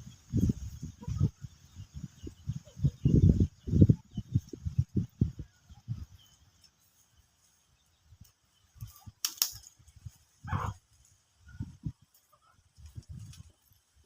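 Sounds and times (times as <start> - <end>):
farm animal call: 10.4 - 10.8.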